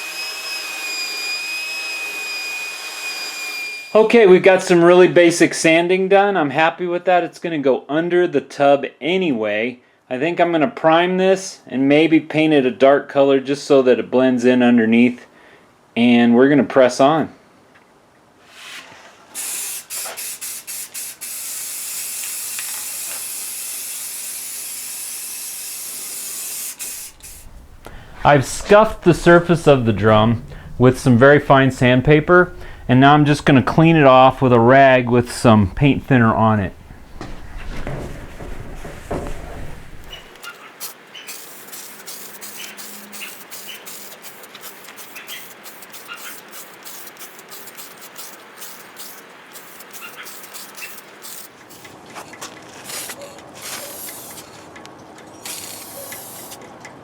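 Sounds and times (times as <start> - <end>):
aerosol spray can hissing: 19.4 - 33.4, 39.3 - 51.9, 55.5 - 56.6
rag rubbing on metal: 26.8 - 51.9.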